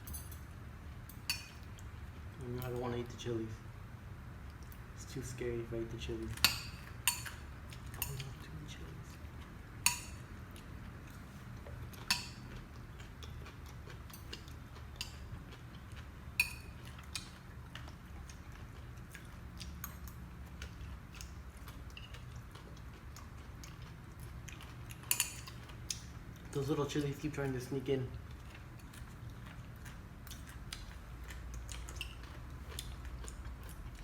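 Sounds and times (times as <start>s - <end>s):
utensils clinking on a dish: 0.0s - 0.5s.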